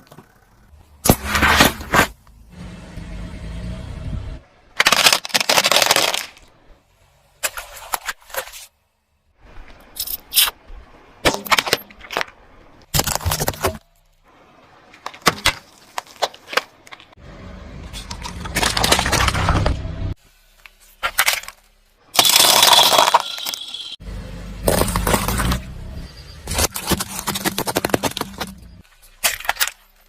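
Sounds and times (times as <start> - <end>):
objects crunching under a tyre: 0.0 - 2.4, 4.8 - 6.6, 14.9 - 17.2, 17.9 - 24.0, 24.6 - 30.0
car rolling rumble: 0.0 - 4.7, 16.8 - 20.2, 24.0 - 28.8.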